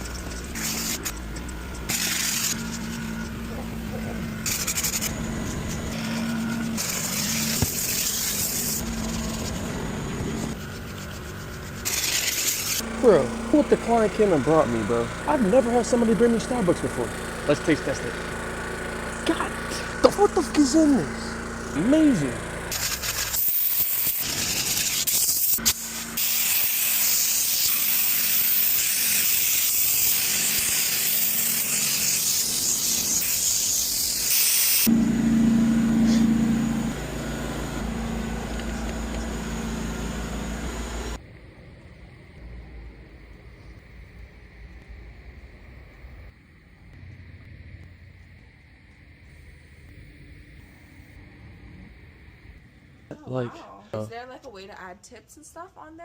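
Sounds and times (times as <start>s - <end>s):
steady low hum: 0.0s - 26.4s, 34.8s - 54.6s
hissing spray: 0.0s - 41.2s.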